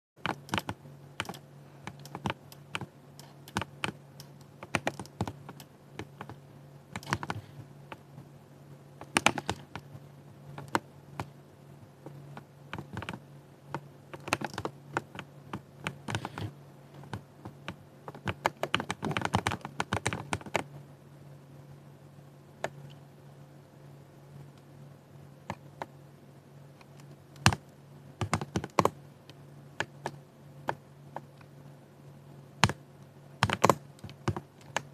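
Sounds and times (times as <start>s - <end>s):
mechanical keyboard typing: 0.2s - 8.0s, 9.0s - 9.9s, 10.6s - 11.4s, 12.3s - 20.7s, 26.8s - 29.0s, 29.8s - 31.4s, 32.6s - 32.8s, 33.4s - 34.9s.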